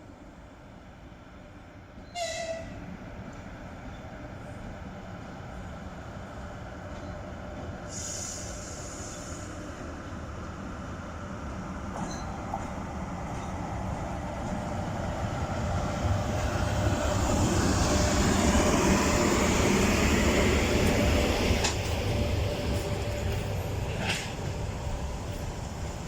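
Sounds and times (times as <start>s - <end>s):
train wheels rumbling: 6.8s - 26.0s.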